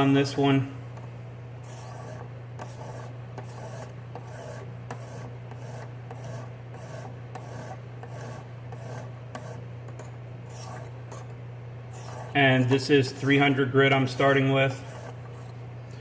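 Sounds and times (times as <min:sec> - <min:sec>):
sharpening stone scraping knife: 0:11.9 - 0:13.4.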